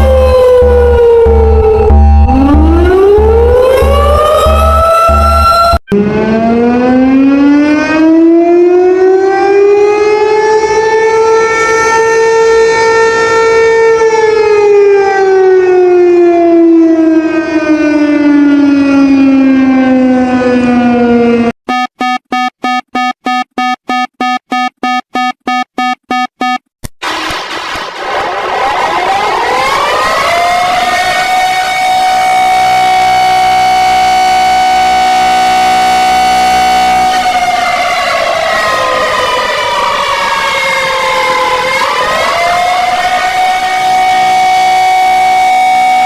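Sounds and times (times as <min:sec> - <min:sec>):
wailing siren tone: 0:00.0 - 0:26.6, 0:28.5 - 0:46.0
fast beeping alarm: 0:21.7 - 0:26.6.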